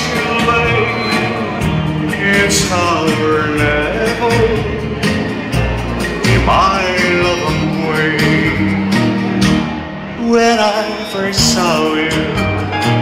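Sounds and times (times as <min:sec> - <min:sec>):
band accompaniment: 0:00.0 - 0:13.0
man singing a slow ballad: 0:02.1 - 0:05.0, 0:06.2 - 0:08.9, 0:10.1 - 0:13.0.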